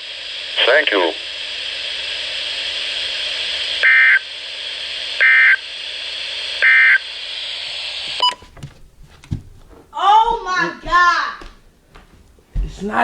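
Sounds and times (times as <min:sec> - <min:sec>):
radio hiss: 0:00.0 - 0:08.2.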